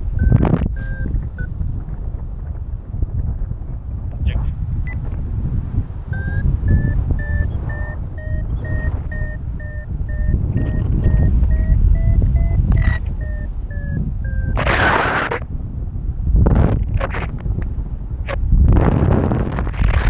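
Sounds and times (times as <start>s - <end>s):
variometer beeping: 0.0s - 1.6s, 6.1s - 15.0s
wind gust on microphone: 0.0s - 20.0s
wind rumble on microphone: 0.0s - 20.0s.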